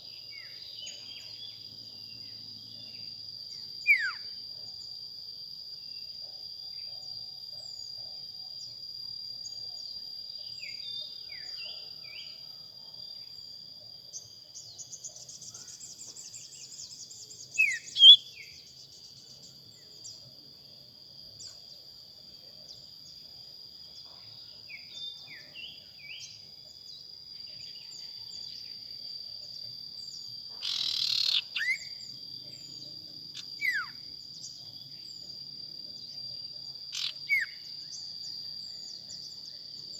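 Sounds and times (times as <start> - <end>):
high-pitched insect drone: 0.0 - 39.9
birds calling with falling whistles: 16.8 - 18.5, 33.4 - 34.0.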